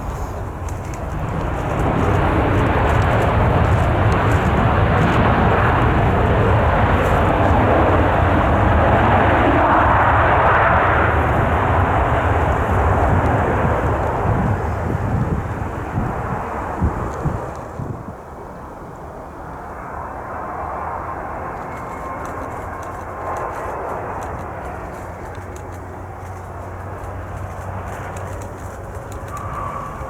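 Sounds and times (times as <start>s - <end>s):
deep rumble: 0.0s - 18.1s
jet engines running: 0.0s - 30.0s.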